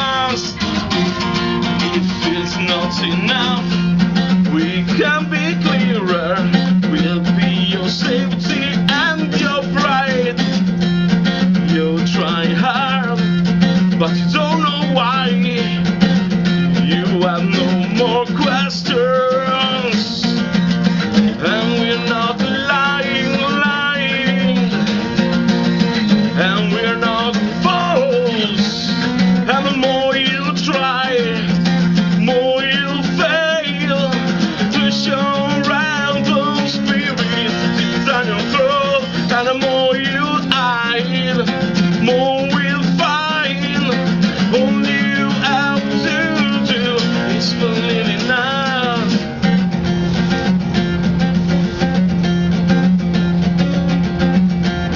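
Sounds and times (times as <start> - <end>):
person singing: 0.0 - 10.4, 11.6 - 13.3, 16.7 - 20.4, 21.3 - 24.9, 26.3 - 49.2
acoustic guitar strumming: 0.0 - 54.9.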